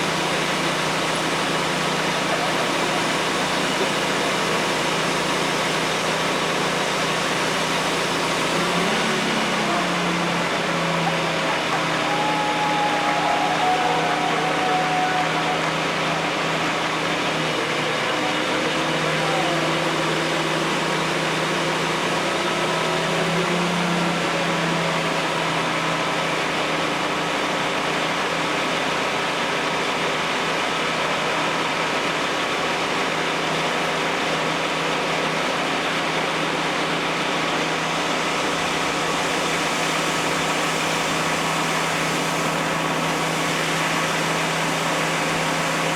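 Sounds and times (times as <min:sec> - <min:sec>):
engine running steadily: 0:00.0 - 0:45.9
faint voices: 0:01.0 - 0:05.4, 0:08.2 - 0:26.6.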